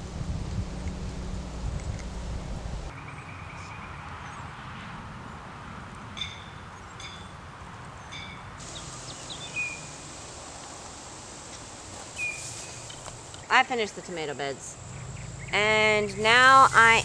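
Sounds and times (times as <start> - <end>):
wind buffeting microphone: 0.0 - 3.2, 14.8 - 17.0
birds chirping: 6.4 - 17.0.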